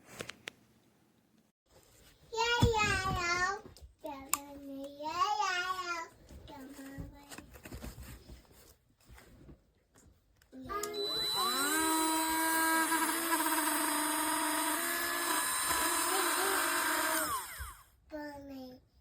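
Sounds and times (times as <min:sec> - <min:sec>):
rotary tool whining: 0:10.8 - 0:17.8.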